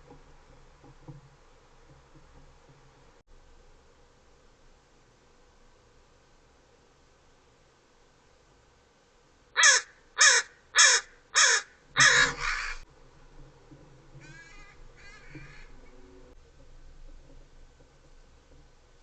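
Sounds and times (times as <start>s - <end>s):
crow cawing: 9.6s - 12.8s, 14.2s - 15.9s.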